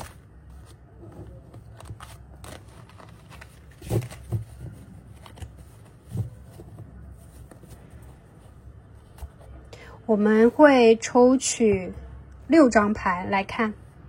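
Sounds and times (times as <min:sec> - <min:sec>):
cards being shuffled: 0:00.0 - 0:08.3.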